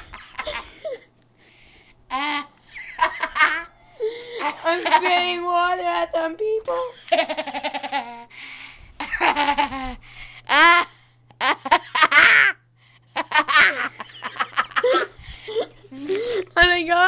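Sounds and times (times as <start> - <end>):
girls laughing: 0.0 - 1.1, 2.1 - 5.5, 6.8 - 8.3, 9.0 - 16.6.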